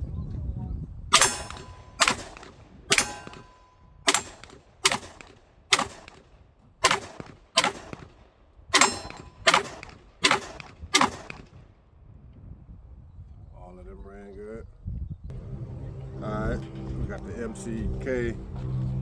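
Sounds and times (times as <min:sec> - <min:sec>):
gunshots: 0:01.1 - 0:11.7
short metallic ring: 0:01.2 - 0:04.6, 0:08.8 - 0:09.5.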